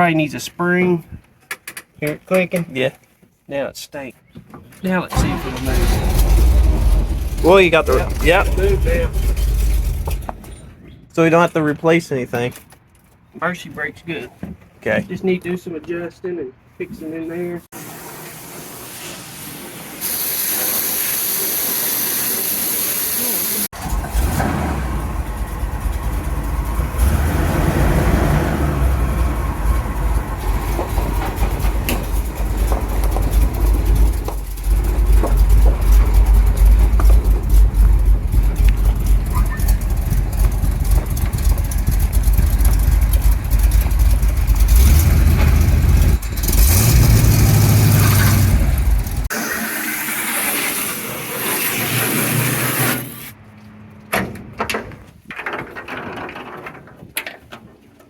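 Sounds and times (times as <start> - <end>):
pickup engine rumbling: 5.1 - 10.9, 23.7 - 49.3.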